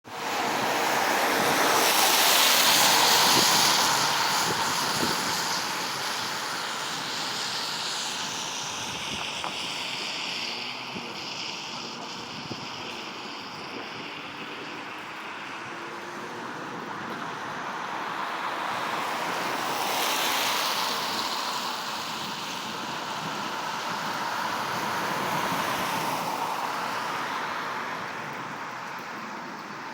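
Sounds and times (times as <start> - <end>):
heavy rain pouring: 0.1 - 29.9.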